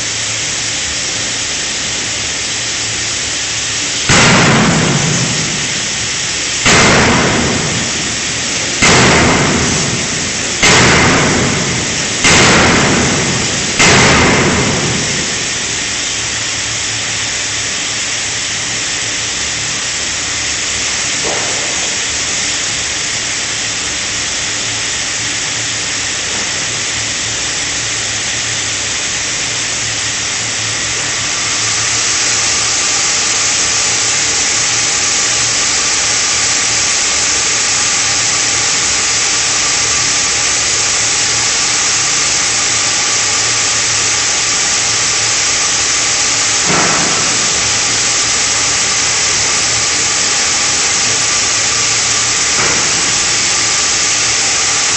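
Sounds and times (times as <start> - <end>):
machinery hiss and hum: 0.0 - 54.9
forging hammer blows ringing: 4.1 - 16.1.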